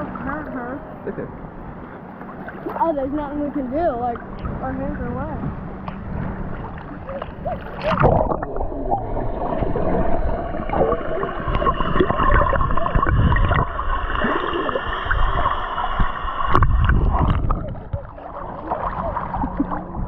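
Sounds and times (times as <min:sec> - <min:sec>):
surf water sloshing: 0:00.0 - 0:20.0.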